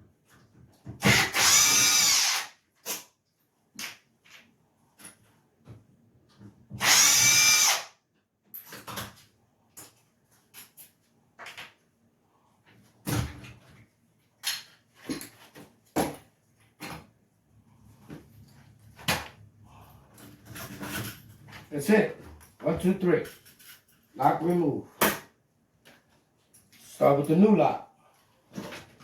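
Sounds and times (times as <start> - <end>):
power drill running: 1.0 - 2.5, 6.8 - 7.9.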